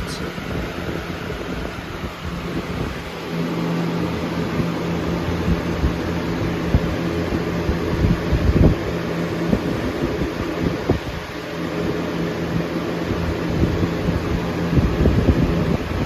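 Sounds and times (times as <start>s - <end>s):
low gusty thumps: 0.0s - 11.2s
box fan running: 0.0s - 16.0s.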